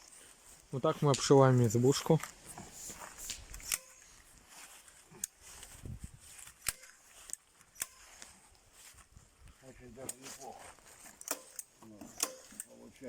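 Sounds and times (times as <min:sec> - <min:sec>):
staple gun clicks: 0:11.2 - 0:12.7.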